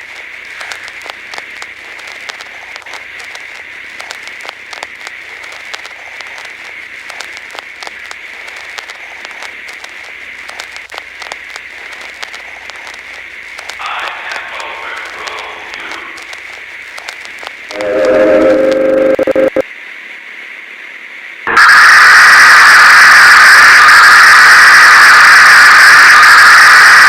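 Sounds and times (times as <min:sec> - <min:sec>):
static crackles: 0:00.0 - 0:27.0
static hiss: 0:00.0 - 0:27.0
loud horn-like tone: 0:17.7 - 0:19.6, 0:21.5 - 0:27.0.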